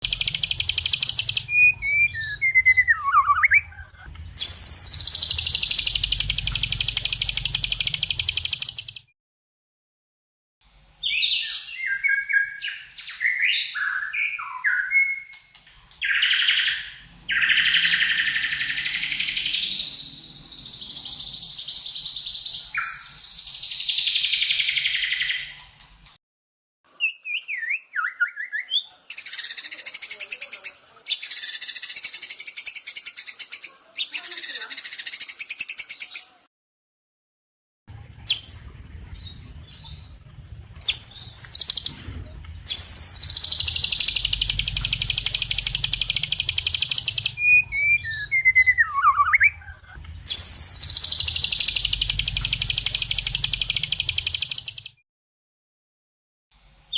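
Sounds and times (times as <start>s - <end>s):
songbird rattling chatters: 40.8s - 42.0s, 42.7s - 47.4s, 50.2s - 54.9s.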